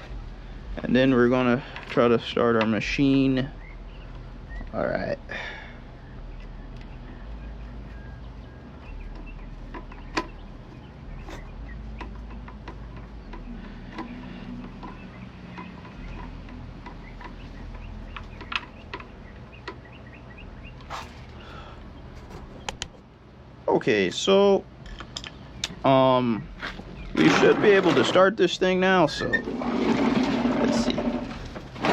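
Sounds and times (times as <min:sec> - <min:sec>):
steady low hum: 0:00.0 - 0:29.5.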